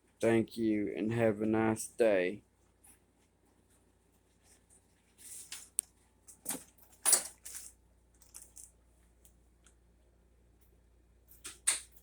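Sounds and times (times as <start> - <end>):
short rustling scrapes: 3.6 - 5.7.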